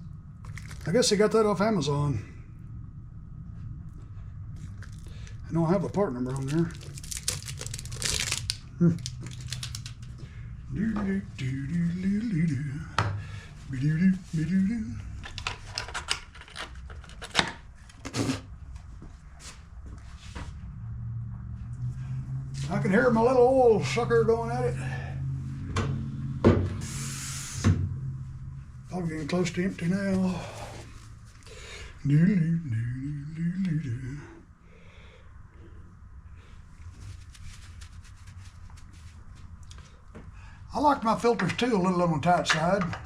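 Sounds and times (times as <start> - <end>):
hands ticking and scraping: 6.4 - 10.1
parts clicking and knocking: 15.2 - 18.1.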